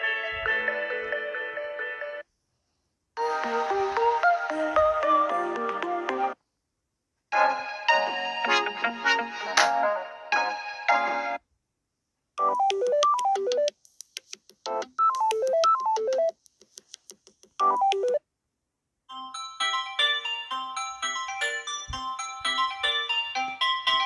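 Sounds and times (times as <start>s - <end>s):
phone ringtone tunes: 12.4s - 13.7s, 14.9s - 16.3s, 17.6s - 18.2s, 19.1s - 24.0s.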